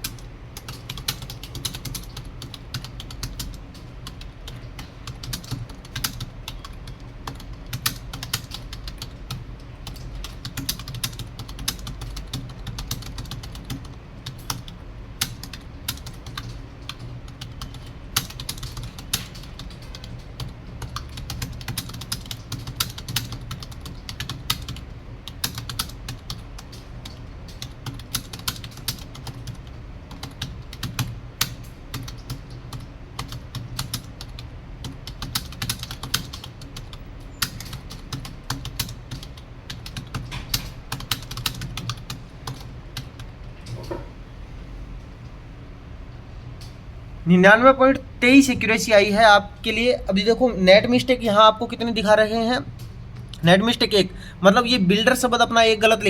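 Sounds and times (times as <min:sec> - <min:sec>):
keyboard typing clicks: 0:00.0 - 0:44.1
low steady hum: 0:00.0 - 0:56.0.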